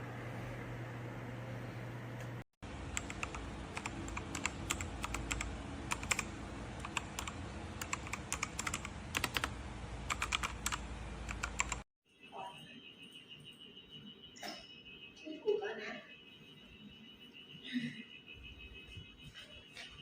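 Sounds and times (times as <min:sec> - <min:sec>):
steady hum: 0:00.0 - 0:11.8
mechanical keyboard key clicks: 0:06.8 - 0:09.5, 0:10.1 - 0:11.8.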